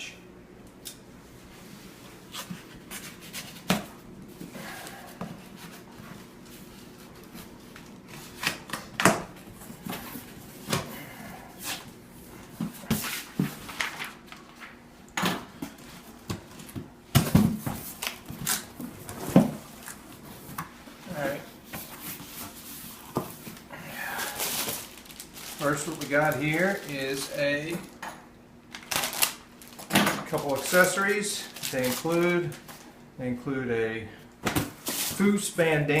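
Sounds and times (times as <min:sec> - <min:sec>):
packaging rustling: 0:22.1 - 0:28.0, 0:28.7 - 0:32.9
box and packaging being opened: 0:23.6 - 0:27.7, 0:28.7 - 0:32.8.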